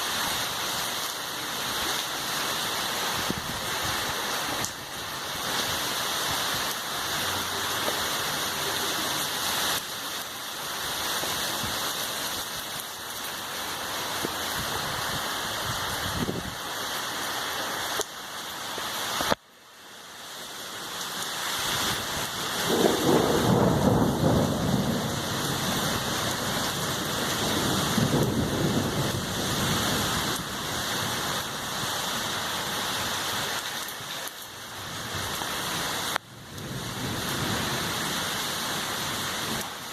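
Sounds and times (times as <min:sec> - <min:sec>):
heavy rain: 0:00.0 - 0:39.9
thunder rumble: 0:22.2 - 0:30.8.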